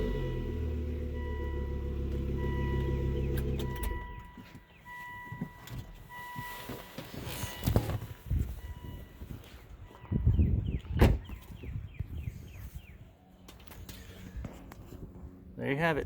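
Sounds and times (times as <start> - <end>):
car engine idling: 0.0 - 6.1
car warning chime beeping: 0.0 - 10.6.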